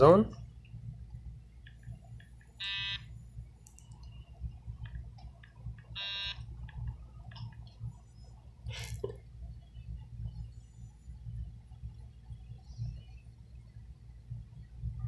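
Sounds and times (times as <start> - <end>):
short electronic buzzes: 6.0 - 6.4.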